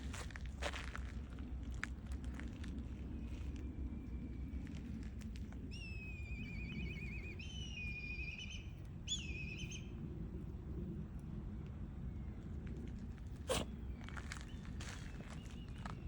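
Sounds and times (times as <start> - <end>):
low background rumble: 0.0 - 16.0
high whistling animal calls: 5.7 - 9.9.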